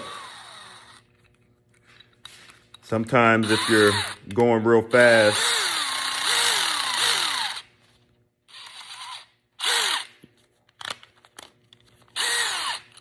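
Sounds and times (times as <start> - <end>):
cordless drill motor whining: 0.0 - 1.1, 3.2 - 4.3, 5.0 - 7.8, 8.5 - 10.2, 12.1 - 13.0.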